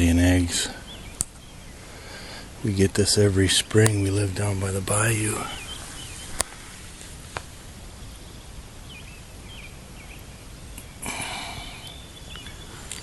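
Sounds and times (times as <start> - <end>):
faint bird chirps: 0.0 - 7.0, 7.8 - 13.0
sharp clicks: 1.2 - 1.4
rustling scrape: 5.8 - 7.5.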